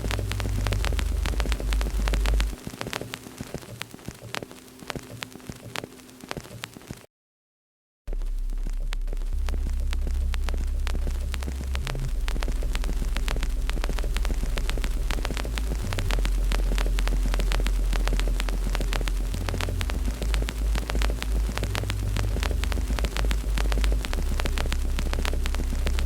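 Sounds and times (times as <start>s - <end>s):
low rumble: 0.0s - 2.6s, 8.1s - 26.0s
wood fire crackling: 0.0s - 7.1s, 8.1s - 26.0s.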